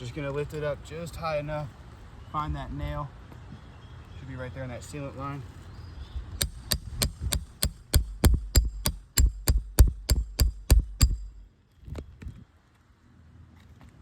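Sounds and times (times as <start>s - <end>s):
hammer striking metal: 6.4s - 11.4s.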